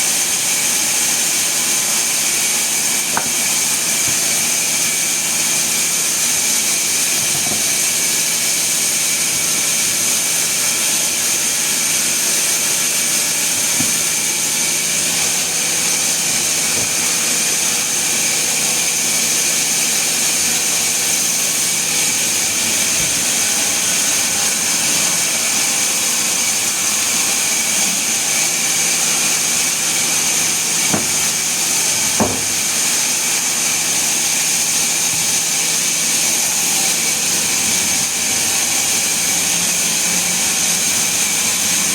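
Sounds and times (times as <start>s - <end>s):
sawmill machinery hissing: 0.0s - 41.9s
short knocks: 3.2s - 4.4s, 13.8s - 14.3s, 30.9s - 32.8s.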